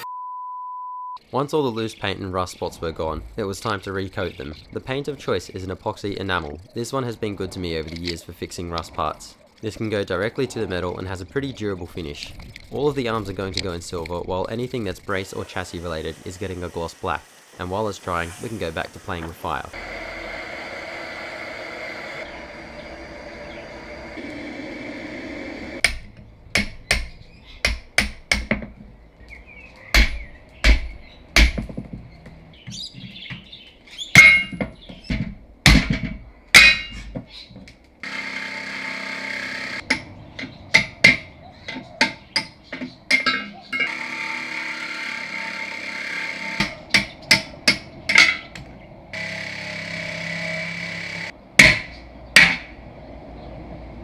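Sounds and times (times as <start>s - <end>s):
gas torch hissing: 15.1s - 25.8s
hammer striking steel: 25.8s - 28.7s, 30.0s - 31.7s, 34.2s - 34.7s, 35.7s - 37.2s, 39.8s - 44.2s, 46.6s - 48.6s, 49.2s - 52.8s.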